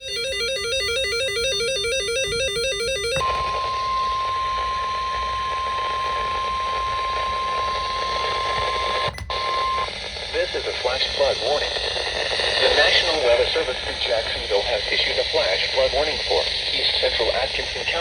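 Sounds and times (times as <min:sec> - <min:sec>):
steady warning alert tone: 0:00.0 - 0:03.3
radio hiss: 0:04.6 - 0:18.0.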